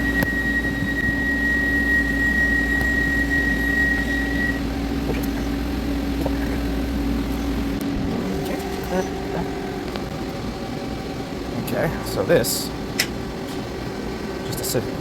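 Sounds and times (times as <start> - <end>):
lathe cutting steel ringing: 0.0 - 6.0
machine hum: 0.0 - 15.0.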